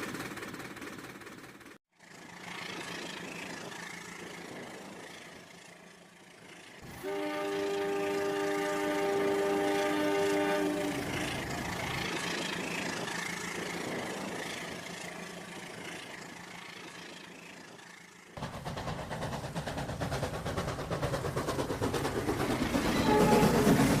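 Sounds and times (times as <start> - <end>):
train clattering on rails: 0.0 - 24.0
train horn: 6.9 - 11.3, 23.0 - 24.0.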